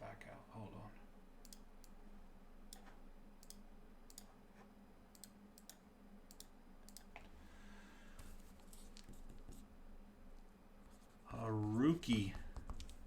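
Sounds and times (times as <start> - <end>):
low steady hum: 0.0 - 13.0
faint sharp clicks: 1.4 - 2.0.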